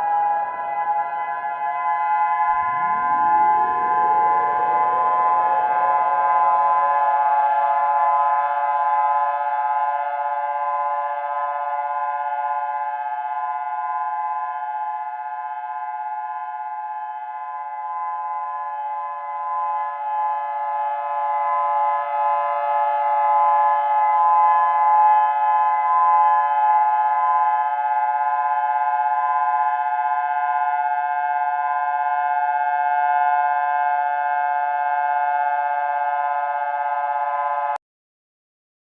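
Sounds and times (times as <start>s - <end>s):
harsh electronic alarm tone: 0.0s - 12.7s.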